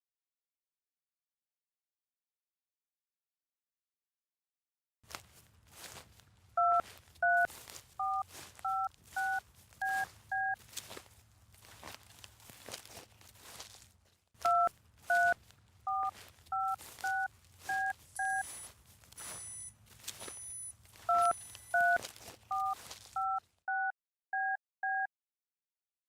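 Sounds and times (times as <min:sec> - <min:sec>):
telephone keypad touch-tones: 0:06.6 - 0:10.6, 0:14.4 - 0:25.1.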